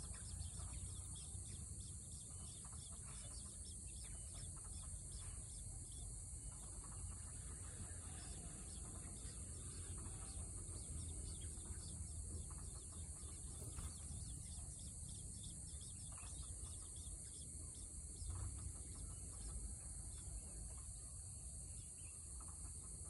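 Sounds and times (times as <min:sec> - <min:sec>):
faint bird chirps: 0:00.0 - 0:23.0.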